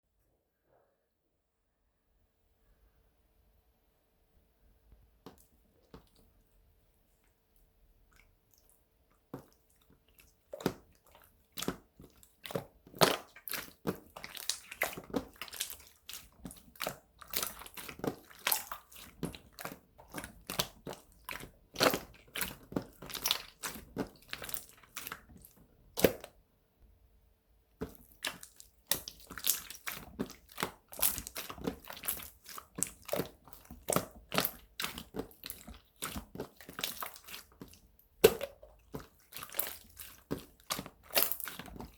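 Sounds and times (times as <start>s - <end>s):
slime squished by hand: 8.1s - 26.4s, 27.8s - 41.9s.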